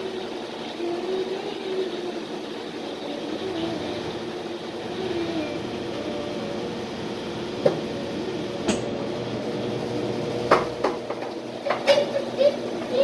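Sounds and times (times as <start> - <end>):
washing machine running: 0.0 - 13.0
washing machine knocks: 7.5 - 9.0, 10.4 - 12.1.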